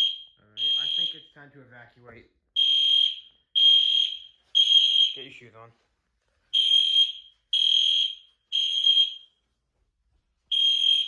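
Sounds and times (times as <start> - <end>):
fire alarm beeps: 0.0 - 1.4, 2.6 - 5.4, 6.5 - 9.4, 10.5 - 11.0.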